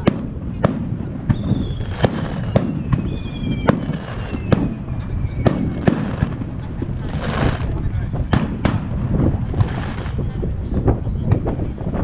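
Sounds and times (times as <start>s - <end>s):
firework bangs: 0.0s - 11.5s
low rumble: 0.0s - 12.0s
whistling firework shells: 1.2s - 6.5s.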